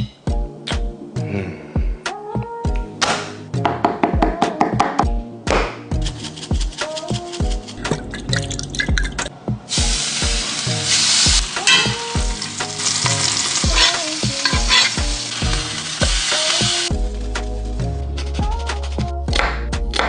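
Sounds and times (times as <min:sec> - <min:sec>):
background music with steady beat: 0:00.0 - 0:20.0
food sizzling in a hot pan: 0:09.7 - 0:16.9.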